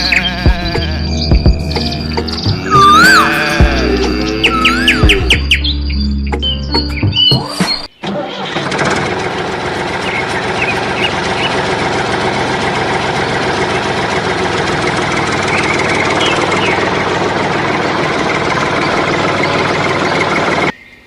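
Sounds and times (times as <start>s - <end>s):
engine idling with knocking: 8.4s - 20.7s.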